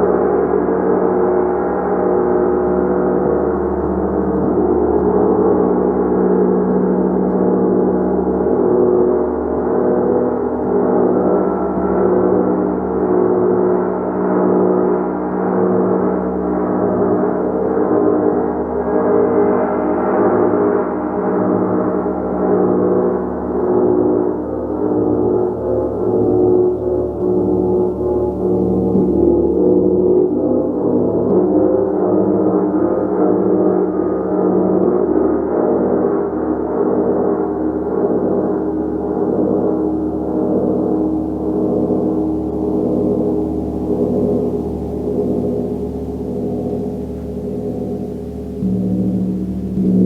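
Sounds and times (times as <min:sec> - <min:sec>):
gong played continuously: 0:00.0 - 0:50.0.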